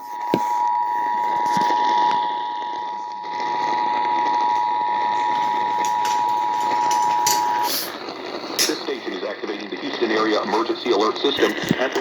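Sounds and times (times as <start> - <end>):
two-tone alarm tone: 0.0 - 8.6
radio hiss: 0.0 - 12.0.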